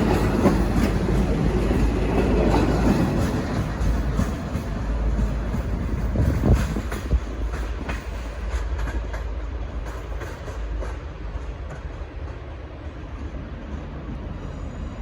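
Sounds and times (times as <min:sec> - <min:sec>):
train wheels clicking over rail joints: 0:00.0 - 0:14.0
low train rumble: 0:00.0 - 0:15.0.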